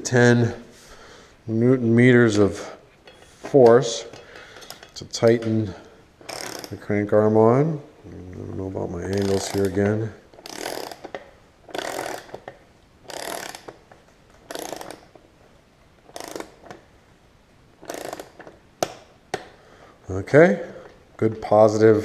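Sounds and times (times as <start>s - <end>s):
ratchet wrench clicking: 6.3s - 6.8s, 9.1s - 9.8s, 10.4s - 12.4s, 13.1s - 13.8s, 14.5s - 15.1s, 16.1s - 16.7s, 17.8s - 18.5s.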